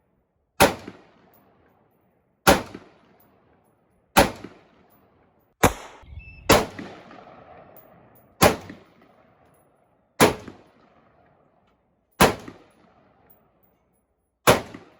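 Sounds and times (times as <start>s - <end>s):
gunshots with echo: 5.6s - 9.4s.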